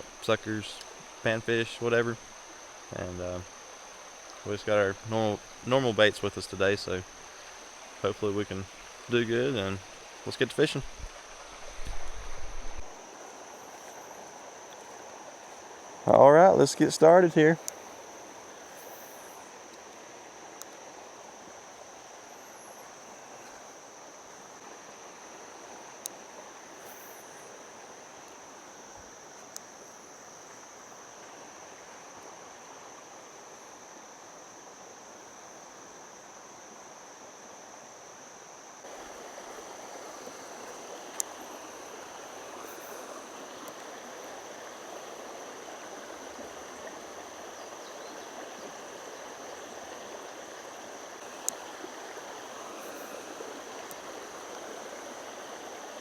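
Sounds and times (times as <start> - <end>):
creek water over rocks: 0.0 - 56.0
crickets trilling: 0.0 - 56.0
faint ticks: 0.7 - 1.0, 17.6 - 18.0, 18.7 - 20.8, 26.0 - 26.2, 29.3 - 30.7, 40.6 - 41.7, 42.6 - 43.9, 51.2 - 51.7, 53.8 - 54.1.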